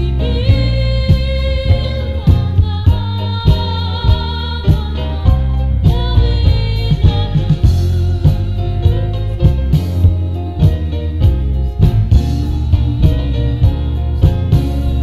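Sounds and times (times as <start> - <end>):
backing band with drum beat: 0.0 - 15.0
woman singing blues: 0.0 - 15.0.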